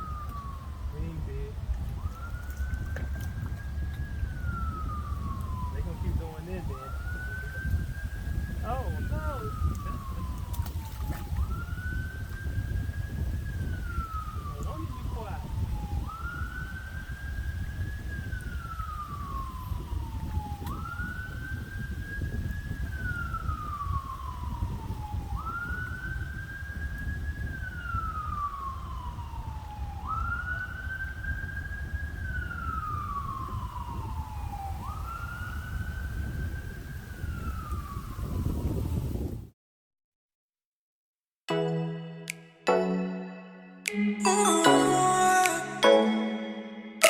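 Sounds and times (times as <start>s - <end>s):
emergency vehicle siren wailing: 0.0s - 39.0s, 41.5s - 47.0s
wind rumble on microphone: 0.0s - 39.6s.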